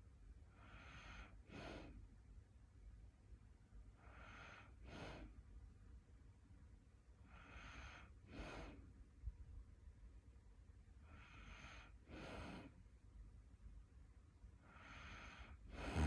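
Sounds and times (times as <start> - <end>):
person snoring: 15.7 - 16.0.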